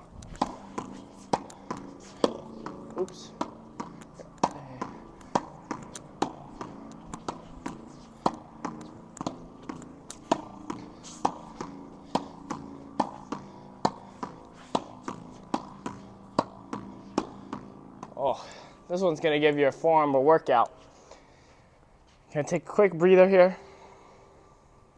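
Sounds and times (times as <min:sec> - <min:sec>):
tennis ball knocking racket and wall: 0:00.2 - 0:18.7.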